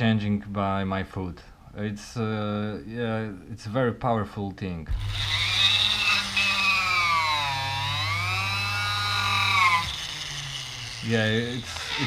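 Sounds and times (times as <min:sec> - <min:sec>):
grinder motor whine: 0:04.9 - 0:12.0.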